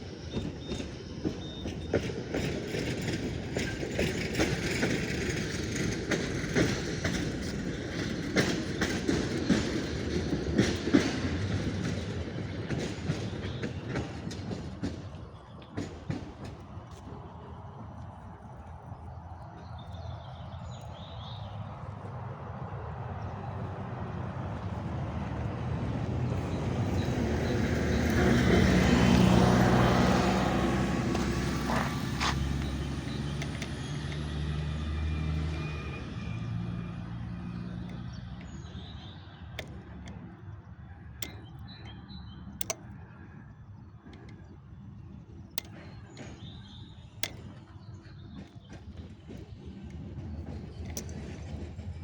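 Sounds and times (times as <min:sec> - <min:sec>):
motor vehicle passing by: 0:16.7 - 0:38.8
sharp clicks: 0:41.2 - 0:43.1, 0:45.5 - 0:46.4, 0:47.2 - 0:47.7.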